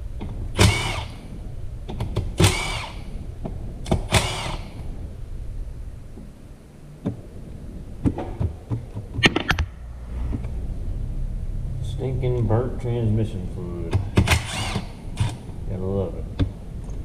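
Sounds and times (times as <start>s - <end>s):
power tool spinning out bolts: 3.9s - 4.7s, 14.2s - 15.4s.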